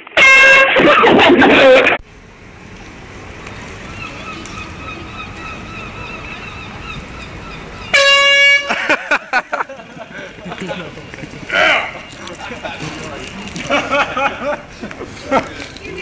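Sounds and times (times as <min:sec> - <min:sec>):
air horn blast: 0:00.1 - 0:00.9, 0:07.9 - 0:09.0
people shouting: 0:11.4 - 0:13.0.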